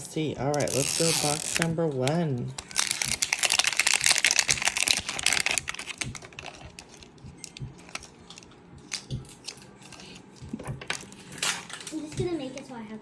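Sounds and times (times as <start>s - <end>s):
plastic packaging crinkling: 0.5s - 10.2s.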